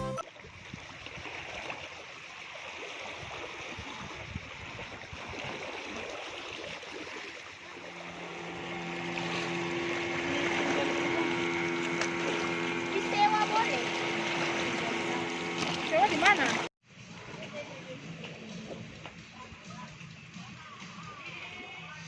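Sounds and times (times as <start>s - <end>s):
boat motor droning: 0.0s - 16.7s
water washing against shore: 0.3s - 16.7s.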